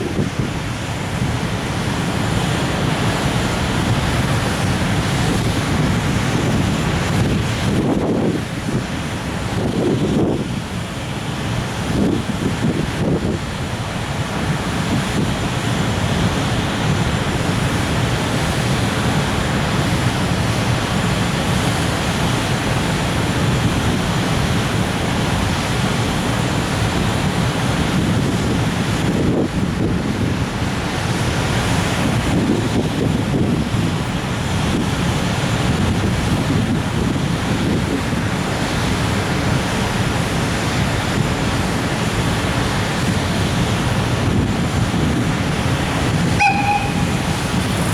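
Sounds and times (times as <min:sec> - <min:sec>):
wind buffeting microphone: 0:27.3 - 0:38.4, 0:43.0 - 0:47.9.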